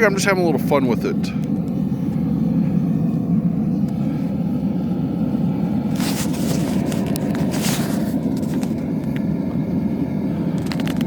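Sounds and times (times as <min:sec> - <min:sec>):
forge roaring: 0:00.0 - 0:11.0.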